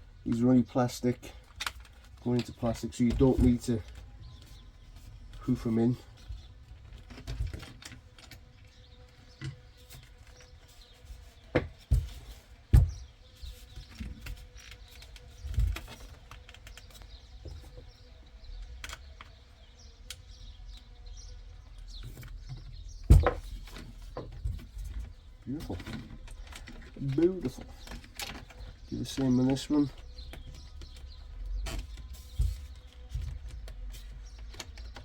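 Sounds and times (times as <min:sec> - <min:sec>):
louder thumps: 0:23.0 - 0:24.7.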